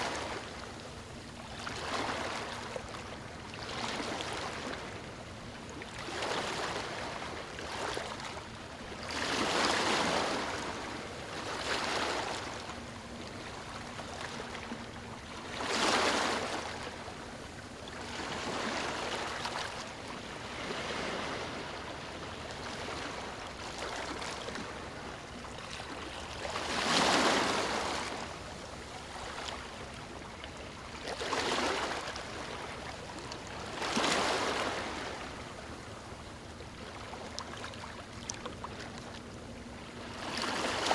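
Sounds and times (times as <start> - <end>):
ocean waves breaking on beach: 18.1 - 25.0, 26.0 - 28.4.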